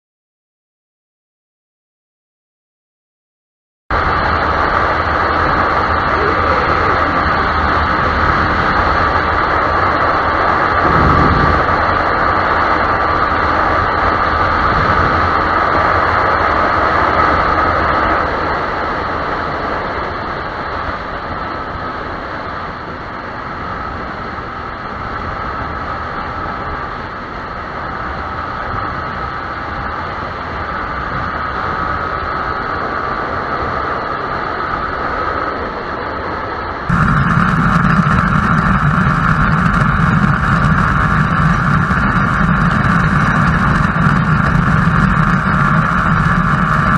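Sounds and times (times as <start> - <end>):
low hum: 3.9 - 46.9
road and wind noise: 3.9 - 46.9
motorcycle engine running: 4.0 - 16.6, 36.9 - 46.9.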